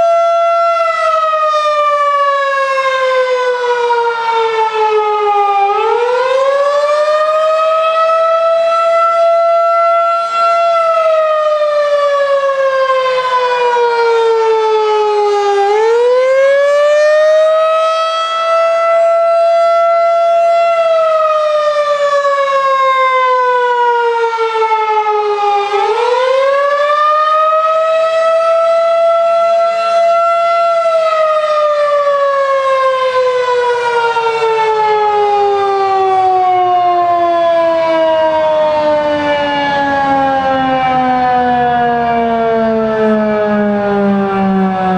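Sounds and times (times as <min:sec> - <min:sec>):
warning siren wailing: 0:00.0 - 0:44.9.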